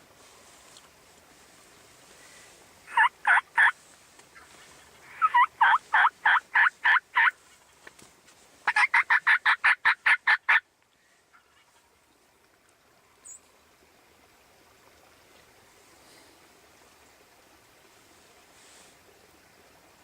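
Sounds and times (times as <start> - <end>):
turkey yelping: 2.9 - 3.7, 4.4 - 7.3, 8.7 - 10.6.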